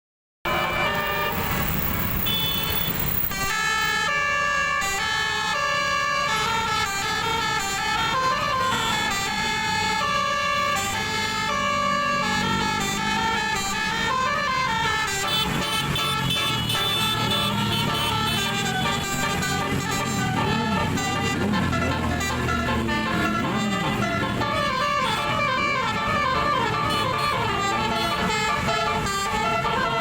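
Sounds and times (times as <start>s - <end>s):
bus multi-tone horn tune: 0.5s - 30.0s
low engine rumble: 18.3s - 28.0s.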